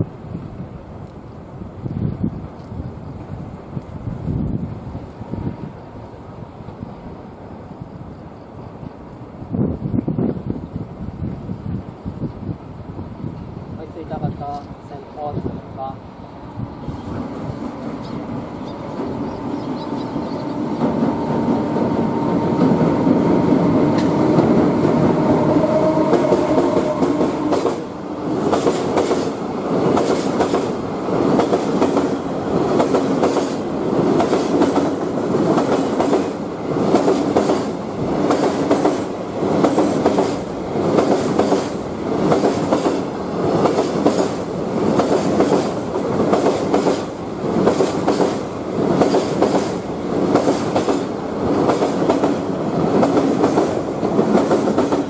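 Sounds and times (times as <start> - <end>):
electric locomotive rumble and whine: 0.0 - 55.0.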